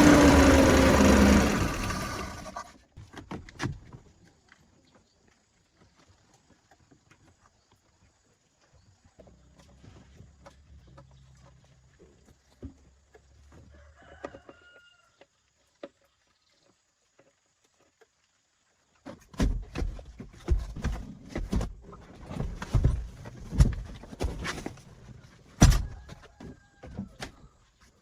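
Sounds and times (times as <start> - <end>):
chicken calling faintly: 13.6 - 15.3
loud irregular knocks and clatter: 19.1 - 24.8.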